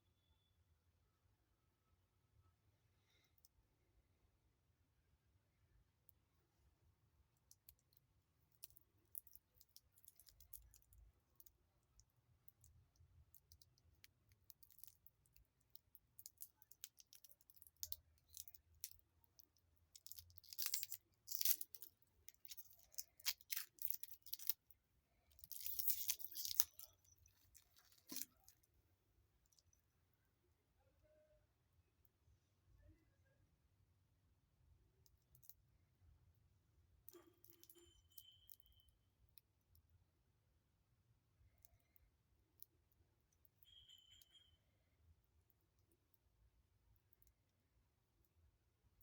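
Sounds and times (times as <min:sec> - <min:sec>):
packaging crinkling: 0:25.4 - 0:28.5.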